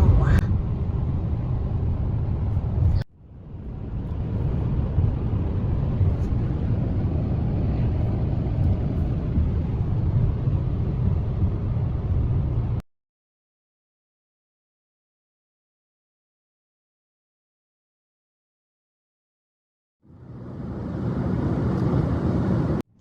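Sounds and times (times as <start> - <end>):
car interior road rumble: 0.0 - 12.8.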